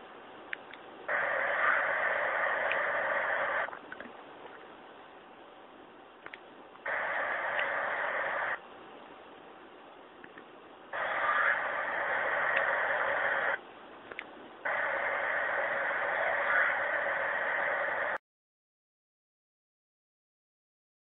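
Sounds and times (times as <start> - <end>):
faint background hiss: 0.0 - 18.2
static-like hiss bursts: 0.0 - 18.2
small clicks: 2.6 - 3.0, 6.2 - 6.5.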